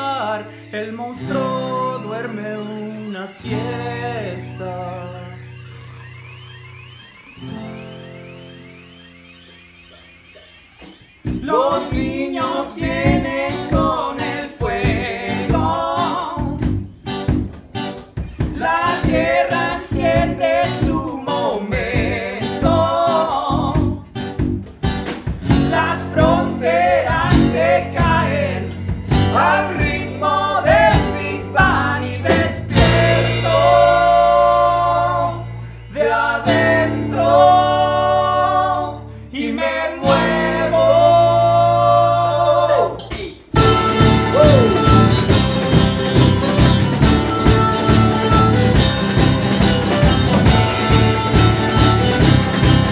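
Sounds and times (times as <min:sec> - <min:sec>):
singing with backing vocals: 0:00.0 - 0:05.5, 0:11.3 - 0:16.9, 0:18.4 - 0:24.1, 0:25.5 - 0:45.2
bass guitar: 0:00.0 - 0:07.8, 0:11.2 - 0:52.9
acoustic guitar and tiple: 0:00.0 - 0:52.9
drums: 0:10.7 - 0:35.0, 0:42.9 - 0:52.9.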